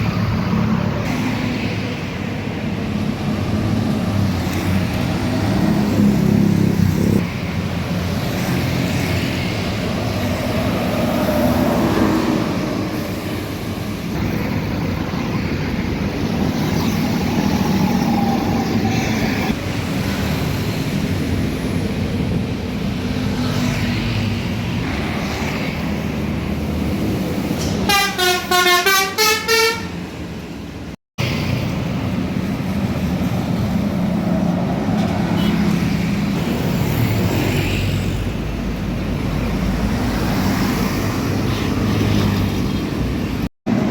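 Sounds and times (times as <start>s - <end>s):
bus engines running past: 0.0s - 43.9s
heavy road traffic: 0.0s - 43.9s
warbling multi-tone bus horn: 27.9s - 30.0s.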